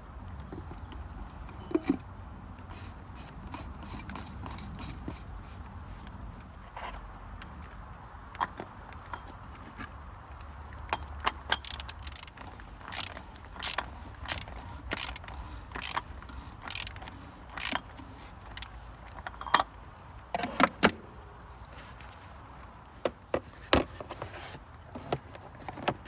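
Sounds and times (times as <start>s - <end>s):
ratchet wrench clicking: 10.9s - 18.8s.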